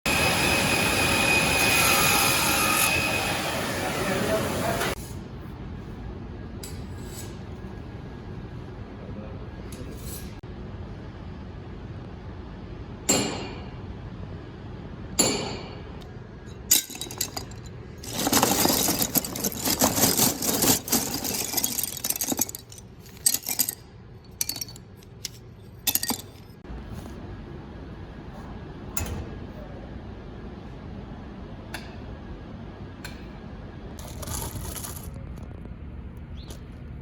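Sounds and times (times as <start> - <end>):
objects clattering and rattling: 16.6 - 26.7, 34.0 - 35.8.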